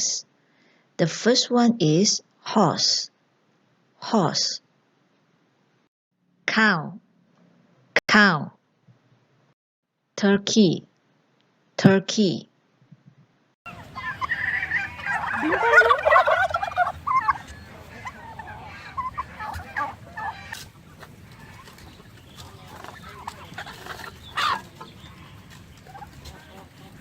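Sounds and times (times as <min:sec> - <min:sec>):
turkeys gobbling: 0:13.7 - 0:27.0.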